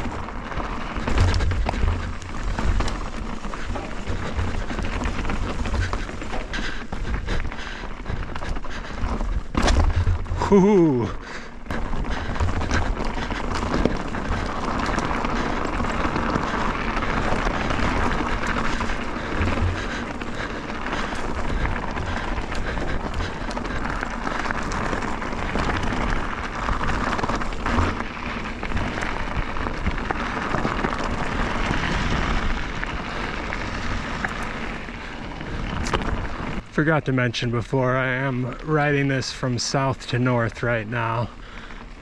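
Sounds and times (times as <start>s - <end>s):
bike knocking over bumps: 0.0s - 32.8s
wind and tyre noise: 0.0s - 42.0s.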